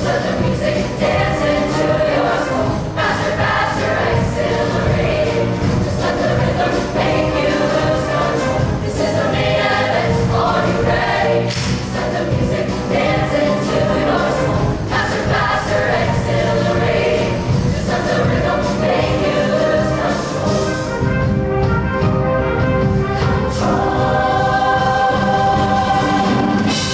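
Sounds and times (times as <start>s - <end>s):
choir singing: 0.0s - 21.3s, 23.0s - 26.9s
live band playing: 0.0s - 26.9s.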